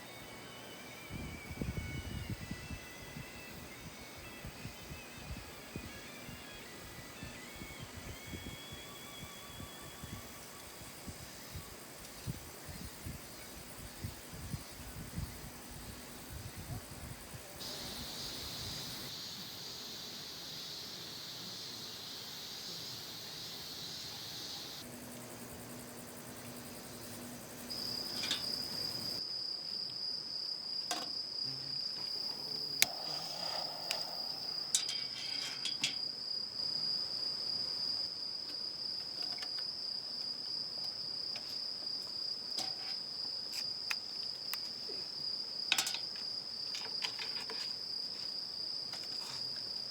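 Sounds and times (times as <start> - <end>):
insect high-pitched trill: 0.0 - 49.9
insects buzzing: 0.0 - 49.9
light clicks and clinks: 45.7 - 47.8.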